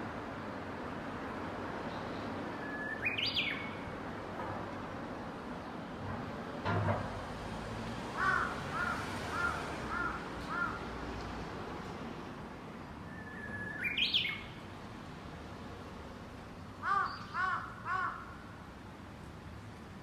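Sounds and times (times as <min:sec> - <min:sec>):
crow cawing: 0:08.2 - 0:10.8, 0:16.8 - 0:18.4
bird singing whistled phrase: 0:13.1 - 0:14.4.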